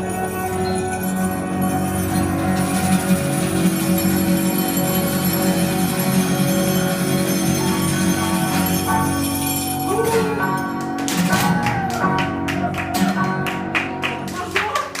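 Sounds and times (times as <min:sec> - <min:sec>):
bells ringing: 0:00.0 - 0:12.0
rhythmic sharp taps: 0:10.5 - 0:15.0.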